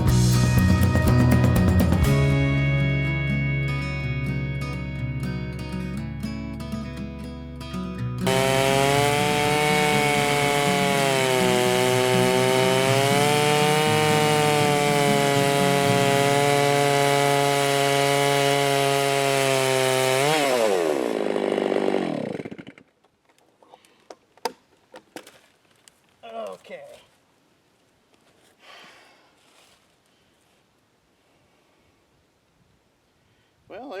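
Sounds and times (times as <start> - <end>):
chainsaw cutting log: 8.2 - 23.0.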